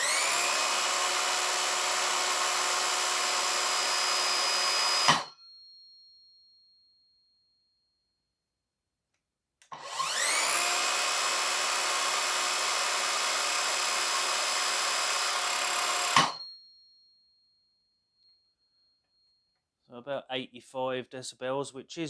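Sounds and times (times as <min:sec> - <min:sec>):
mitre saw motor whine: 0:00.0 - 0:05.3, 0:09.7 - 0:16.4.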